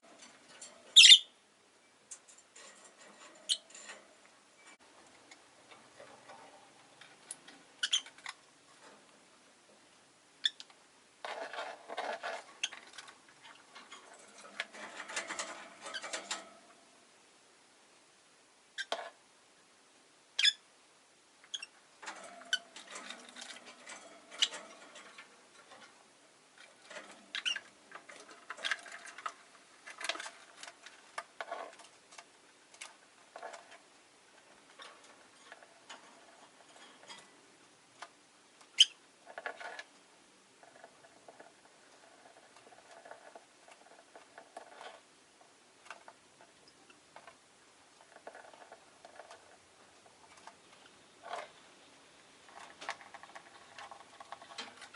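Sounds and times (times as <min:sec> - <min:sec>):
bird chirping: 0:00.9 - 0:02.0, 0:07.8 - 0:08.2, 0:38.8 - 0:39.0
small clicks and scratches: 0:02.1 - 0:09.2, 0:10.5 - 0:16.8, 0:21.5 - 0:51.8, 0:52.4 - 0:54.9.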